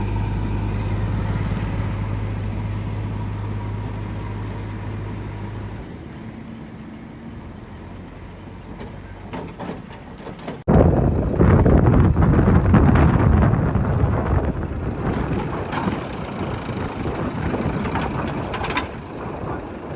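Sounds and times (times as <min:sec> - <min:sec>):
diesel engine humming: 0:00.0 - 0:19.9.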